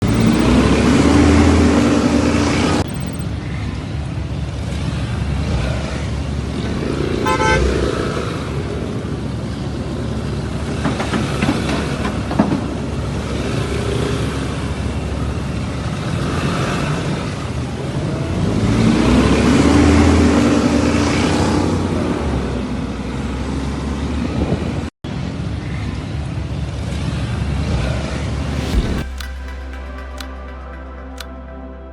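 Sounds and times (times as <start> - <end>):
street traffic: 0.0 - 31.8
car horns: 7.2 - 8.2.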